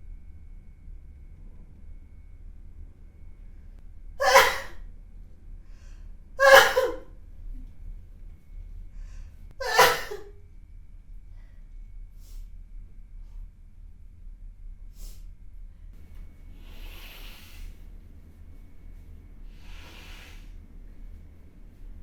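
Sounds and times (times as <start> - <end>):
person sneezing: 4.2 - 4.8, 6.4 - 7.1, 9.6 - 10.3.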